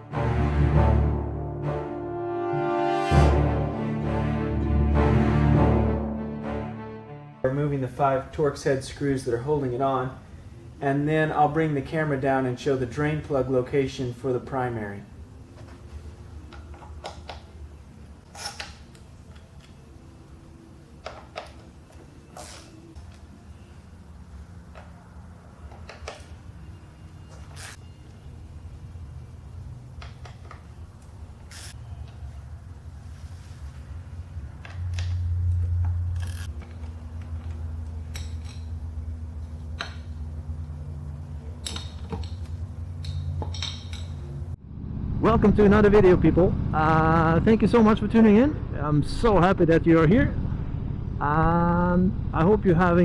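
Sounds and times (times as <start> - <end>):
metal tools and screws clinking: 41.6 - 44.2.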